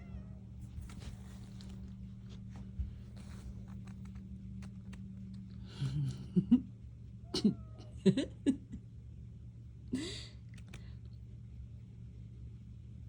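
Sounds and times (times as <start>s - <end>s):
cats meowing: 7.3s - 8.1s.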